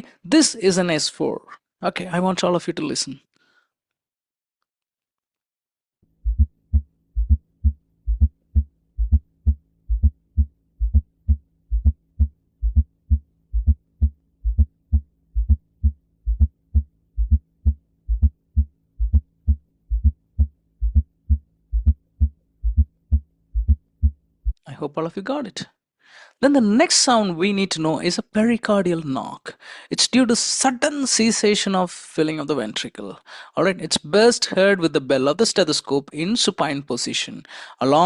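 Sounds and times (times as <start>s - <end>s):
heartbeat low thuds: 6.2s - 24.6s.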